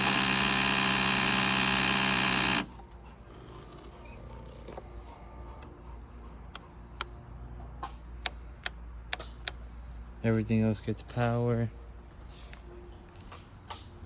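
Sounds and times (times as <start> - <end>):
starter electrical buzz: 0.0 - 5.7
sharp clicks: 7.8 - 9.6.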